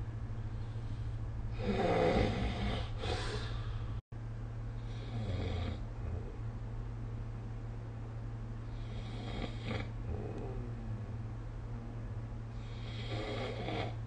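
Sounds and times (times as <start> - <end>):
steady low hum: 0.0 - 14.0
person snoring: 1.5 - 3.7, 4.8 - 6.4, 8.7 - 11.2, 12.6 - 14.0.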